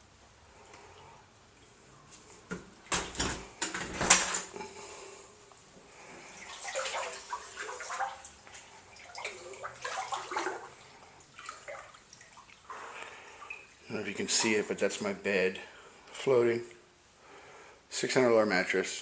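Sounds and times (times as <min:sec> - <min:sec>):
floodwater splashing and sloshing: 0:06.0 - 0:14.8.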